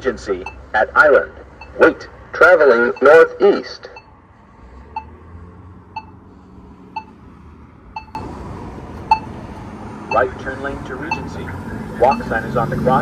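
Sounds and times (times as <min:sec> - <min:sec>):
traffic noise: 0:00.0 - 0:13.0
crosswalk button beeping tick: 0:00.4 - 0:00.7, 0:01.6 - 0:01.9, 0:02.9 - 0:04.1, 0:04.9 - 0:05.2, 0:06.0 - 0:06.2, 0:07.0 - 0:07.2, 0:08.0 - 0:13.0.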